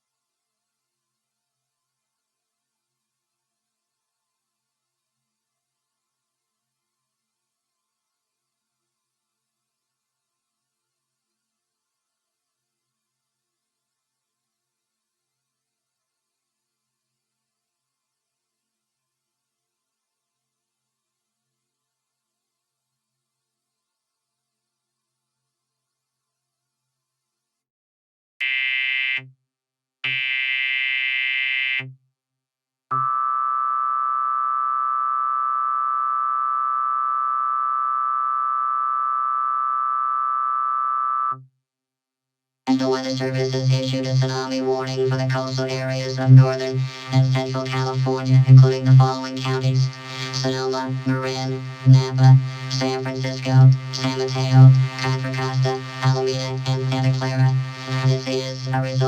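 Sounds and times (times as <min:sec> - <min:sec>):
steady electronic attention tone: 0:42.7 - 0:59.0.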